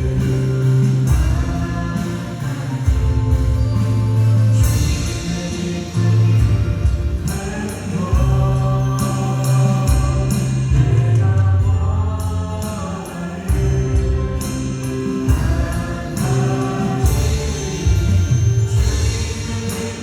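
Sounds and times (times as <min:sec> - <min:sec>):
drum hits: 0:00.0 - 0:05.8, 0:13.5 - 0:20.0
acoustic guitar: 0:00.0 - 0:20.0
bass: 0:00.0 - 0:20.0
keyboards: 0:00.0 - 0:20.0
voices singing together: 0:00.0 - 0:20.0.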